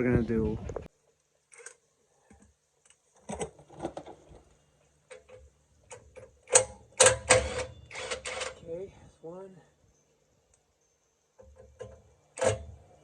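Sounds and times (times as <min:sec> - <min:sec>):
metallic clicks and knocks: 0:05.1 - 0:08.6, 0:11.4 - 0:12.9.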